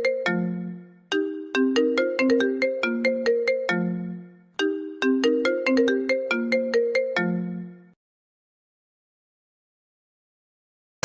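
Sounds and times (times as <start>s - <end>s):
smartphone ringtone melody: 0.0s - 8.0s.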